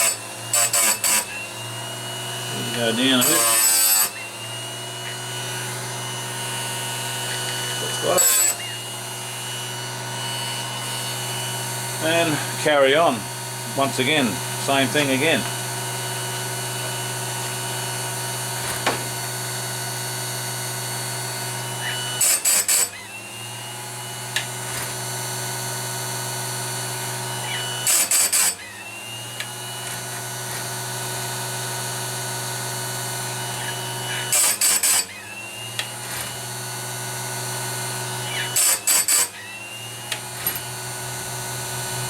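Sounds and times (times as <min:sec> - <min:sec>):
chain grinder humming: 0:00.0 - 0:42.0
hissing grinding on chain teeth: 0:02.4 - 0:18.8, 0:33.2 - 0:35.4.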